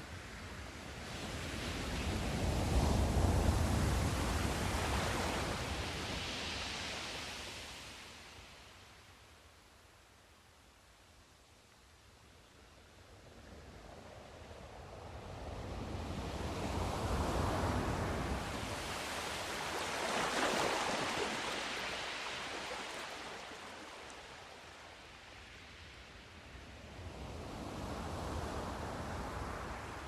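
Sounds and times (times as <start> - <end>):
sea waves breaking: 17.9 - 24.9.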